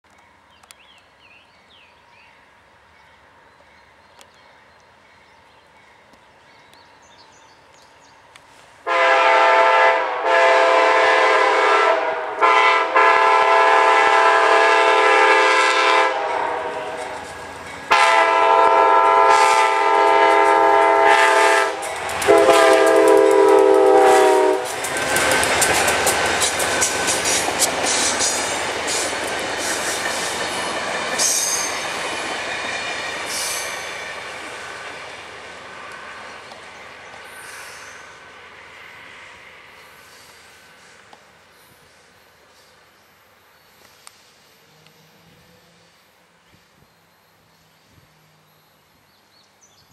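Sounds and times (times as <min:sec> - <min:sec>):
train passing rushing noise: 0:08.2 - 0:42.9
locomotive air horn blasts: 0:08.8 - 0:17.3, 0:17.9 - 0:25.2
wheels clattering over rail joints: 0:21.8 - 0:34.3.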